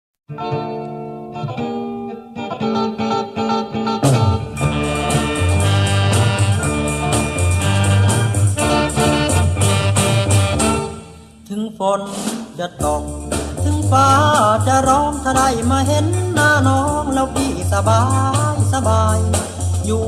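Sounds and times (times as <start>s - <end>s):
guitar over held chords: 0.3s - 11.5s
band with bass and beat: 0.4s - 20.0s.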